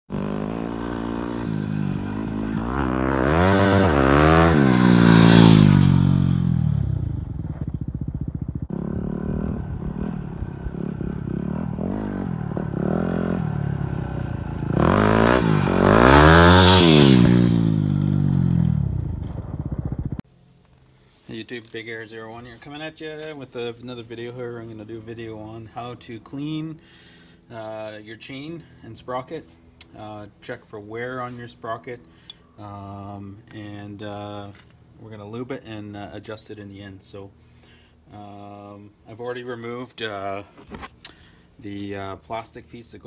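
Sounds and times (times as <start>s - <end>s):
motorcycle engine revving: 0.1s - 20.2s.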